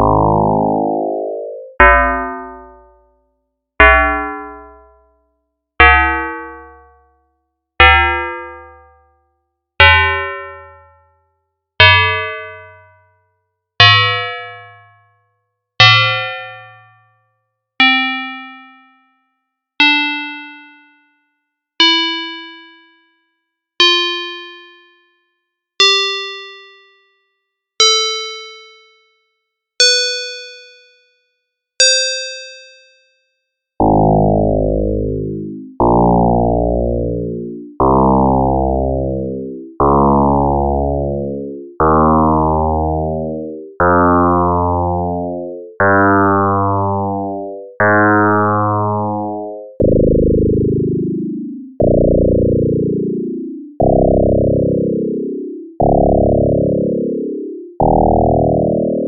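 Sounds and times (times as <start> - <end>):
synthesized bell tones: 0.0 - 2.7.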